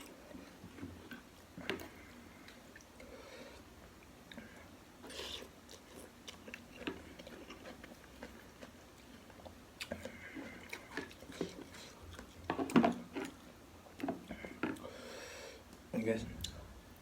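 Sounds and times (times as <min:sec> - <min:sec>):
chewing and biting: 0:04.2 - 0:14.9.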